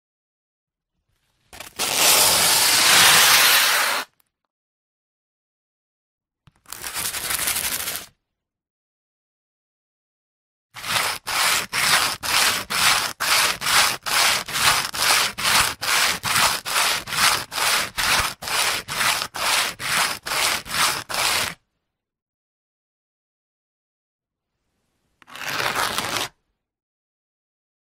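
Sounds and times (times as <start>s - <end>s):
sandpaper rubbing: 1.6s - 4.1s, 6.7s - 8.1s, 10.8s - 21.6s, 25.3s - 26.3s.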